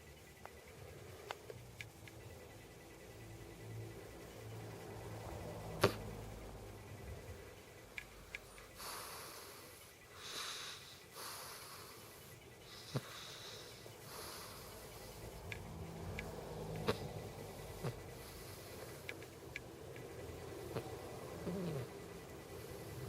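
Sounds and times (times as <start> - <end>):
cat snoring: 5.7 - 6.2, 8.8 - 15.3, 16.4 - 19.1, 20.4 - 23.0
sharp clicks: 15.3 - 18.0, 18.8 - 21.0.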